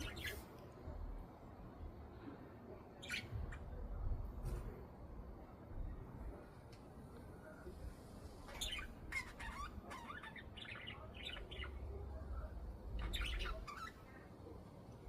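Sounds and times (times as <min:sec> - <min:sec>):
budgerigars chirping: 0:08.5 - 0:11.8, 0:13.0 - 0:14.0.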